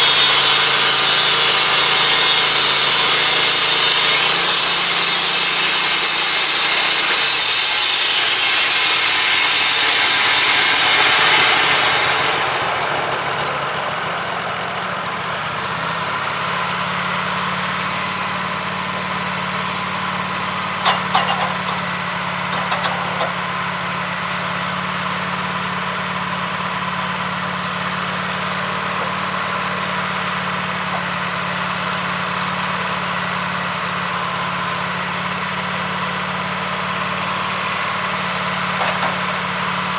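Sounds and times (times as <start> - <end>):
sawmill band blade sawing: 0.0 - 14.6, 17.4 - 24.1, 26.8 - 33.2, 35.6 - 39.9
engine idling: 8.4 - 39.9.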